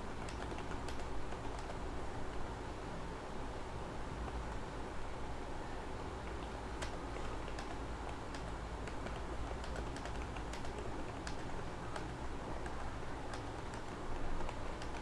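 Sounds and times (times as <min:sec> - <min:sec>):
keyboard typing: 0:00.0 - 0:02.5, 0:06.3 - 0:15.0.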